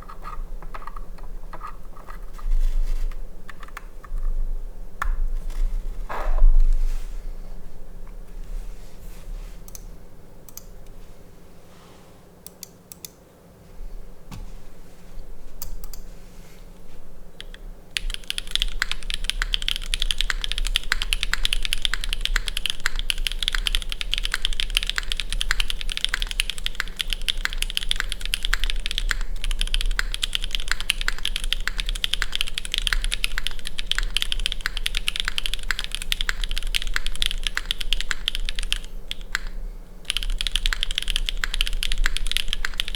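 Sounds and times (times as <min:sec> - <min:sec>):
mechanical keyboard typing: 0:00.0 - 0:02.3, 0:17.4 - 0:42.9.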